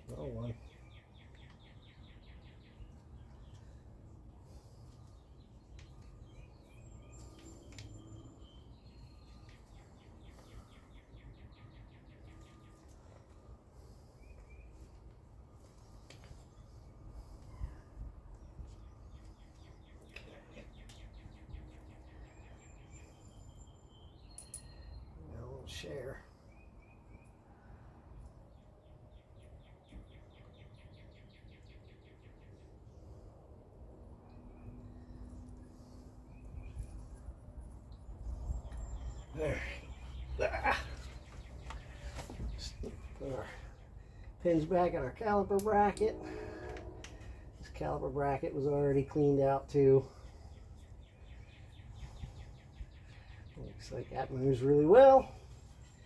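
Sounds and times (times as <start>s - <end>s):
songbirds chirping: 0.0s - 56.0s
steady low hum: 32.2s - 56.0s.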